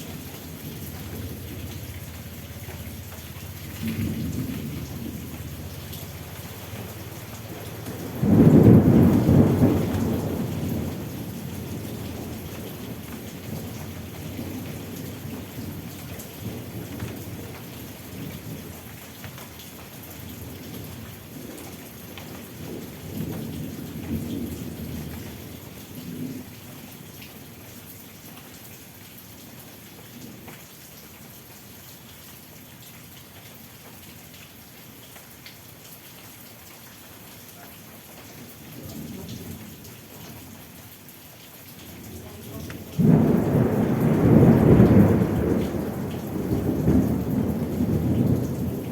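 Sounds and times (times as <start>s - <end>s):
thunder rumbling: 0.0s - 17.5s, 42.0s - 48.9s
steady rain falling: 0.0s - 48.9s.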